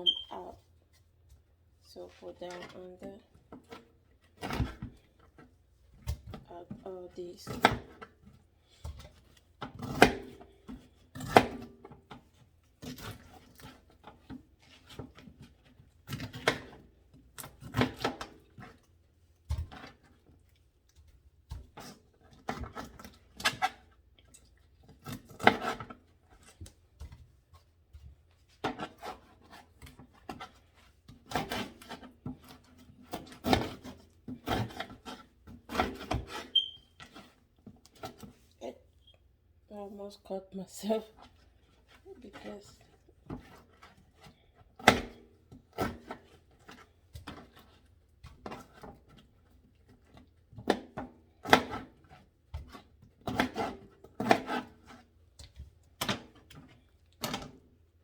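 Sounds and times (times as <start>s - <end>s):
knife cutting and scraping pineapple: 2.0s - 18.9s, 21.6s - 26.7s, 28.5s - 38.5s, 41.1s - 55.2s.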